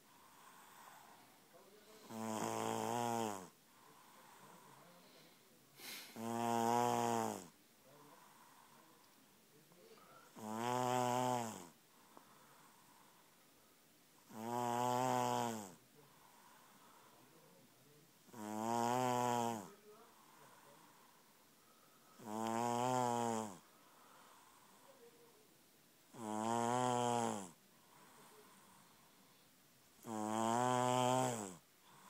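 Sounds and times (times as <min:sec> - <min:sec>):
person snoring: 0:02.0 - 0:05.0, 0:05.8 - 0:07.5, 0:10.3 - 0:11.8, 0:14.3 - 0:16.9, 0:18.3 - 0:20.8, 0:22.2 - 0:24.6, 0:26.1 - 0:28.8, 0:30.0 - 0:32.0.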